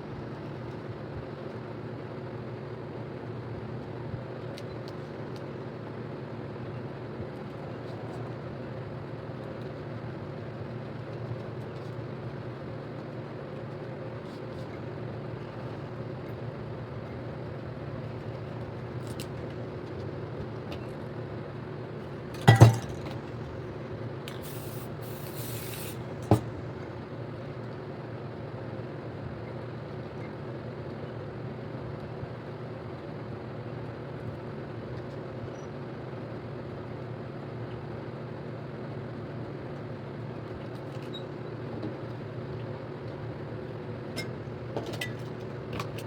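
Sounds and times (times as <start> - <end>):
aerosol spray can hissing: 24.4 - 26.0.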